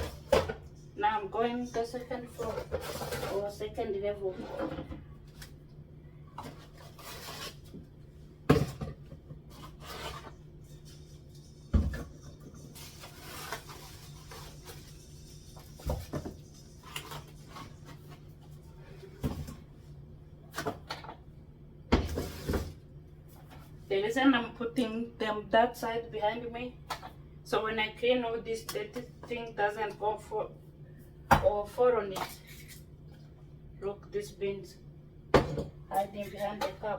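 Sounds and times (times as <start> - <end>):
knocks and clunks of containers: 35.3 - 35.8.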